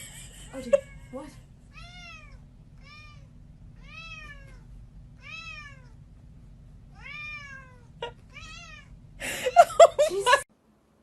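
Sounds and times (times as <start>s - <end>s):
cat meowing: 1.7s - 6.0s, 6.9s - 9.0s.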